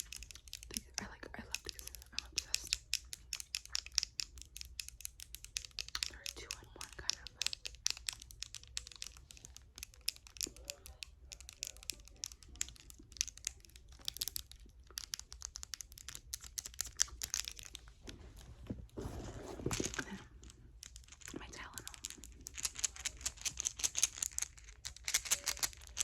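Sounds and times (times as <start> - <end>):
crinkling handling noise: 7.3 - 26.0
rustling: 8.0 - 26.0.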